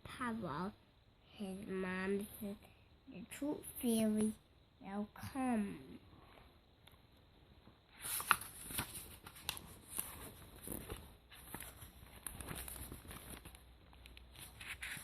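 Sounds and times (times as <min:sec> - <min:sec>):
book pages rustling: 0:07.9 - 0:15.0.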